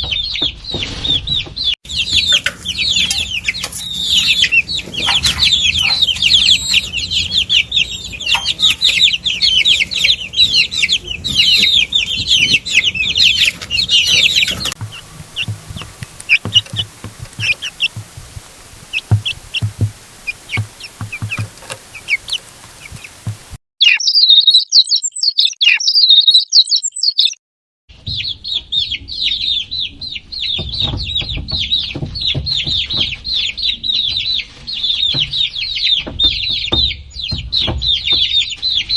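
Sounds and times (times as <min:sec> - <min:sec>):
chicks peeping: 0:00.1 - 0:27.4, 0:28.0 - 0:38.9
low knocks: 0:01.9 - 0:23.6.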